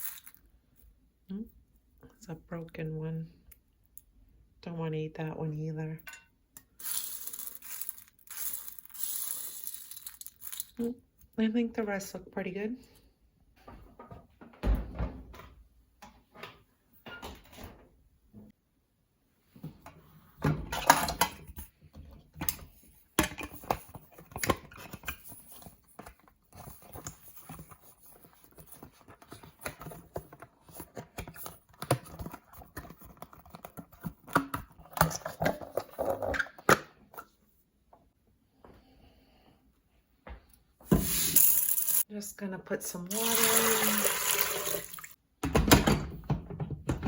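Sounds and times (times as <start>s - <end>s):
dried beans rattling in container: 0.0s - 0.4s, 6.8s - 10.9s, 41.0s - 42.0s.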